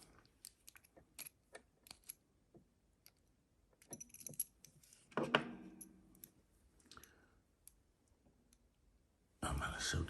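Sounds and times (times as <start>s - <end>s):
metallic clatter with ring: 3.8s - 5.0s.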